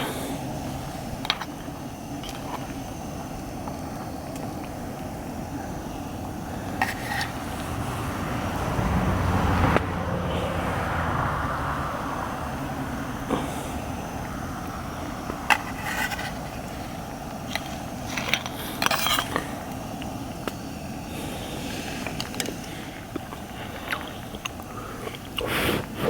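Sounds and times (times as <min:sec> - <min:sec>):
low background rumble: 0:00.0 - 0:26.0
utensils clicking on tableware: 0:17.5 - 0:19.4.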